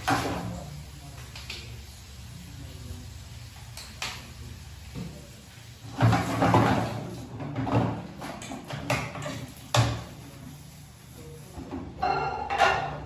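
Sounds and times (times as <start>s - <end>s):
objects scraping and thudding: 5.9s - 10.1s.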